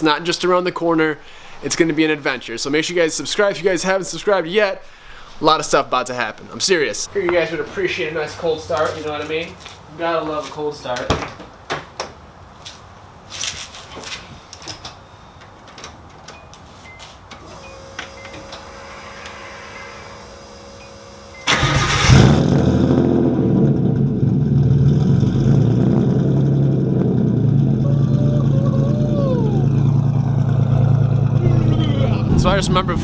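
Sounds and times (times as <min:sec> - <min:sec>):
car engine cranking and idling: 0:17.4 - 0:33.0.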